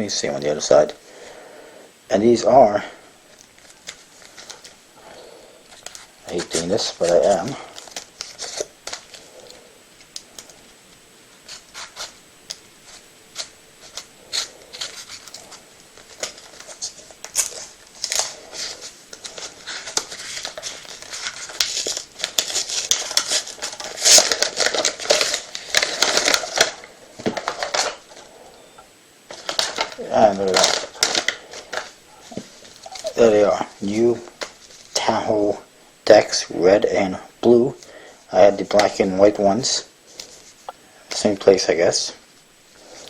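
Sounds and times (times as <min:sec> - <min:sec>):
packaging tearing and crinkling: 0:03.3 - 0:28.5, 0:29.3 - 0:42.0
clicks and scratches: 0:05.7 - 0:28.3.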